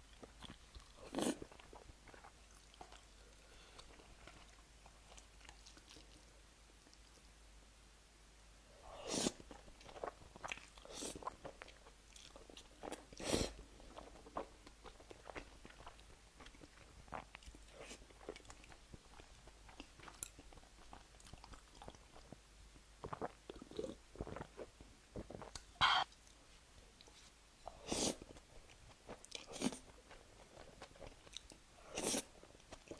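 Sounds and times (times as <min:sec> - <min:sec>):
crunchy food chewing: 0:00.1 - 0:06.3
mouth clicks: 0:25.8 - 0:26.1.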